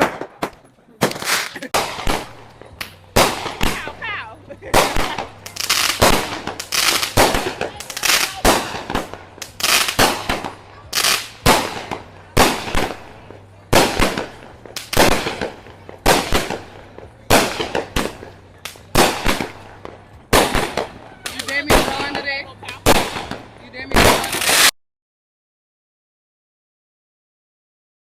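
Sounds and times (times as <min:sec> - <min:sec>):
firework bangs: 0:00.0 - 0:24.7.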